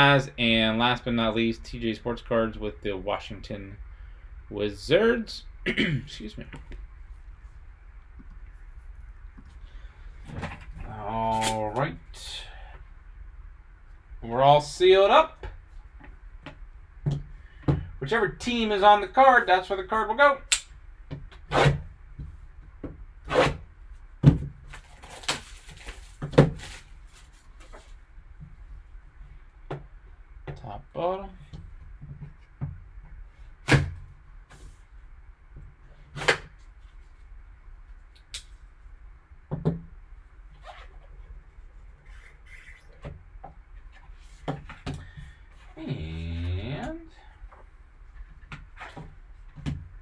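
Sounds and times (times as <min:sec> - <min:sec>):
packaging knocks and rustles: 0:24.3 - 0:28.0
cards rubbing and shuffling: 0:41.8 - 0:42.9.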